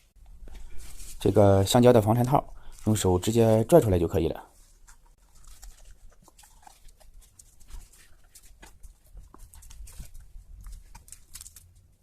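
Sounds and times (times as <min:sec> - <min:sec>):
rubbery squeaks of rubber boot: 0:04.7 - 0:11.5.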